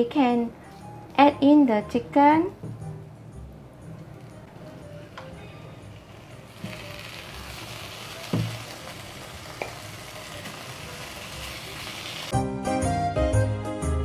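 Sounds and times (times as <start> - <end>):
music: 0.0 - 14.0
chicken sizzling in hot oil: 4.2 - 12.4.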